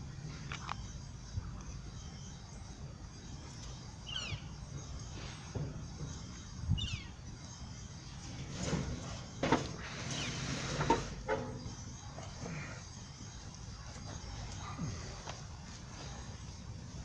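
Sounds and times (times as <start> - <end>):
bird chirping: 0.0 - 17.0
knocks and scrapes: 8.2 - 12.4.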